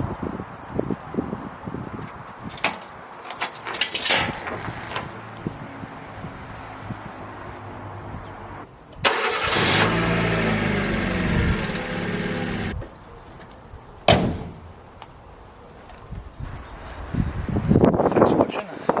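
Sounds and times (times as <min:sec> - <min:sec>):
car engine starting and revving: 0:09.0 - 0:12.8.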